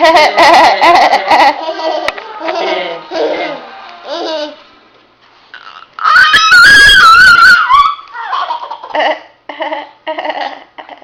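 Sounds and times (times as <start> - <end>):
high-pitched wavering cry: 5.6 - 8.6.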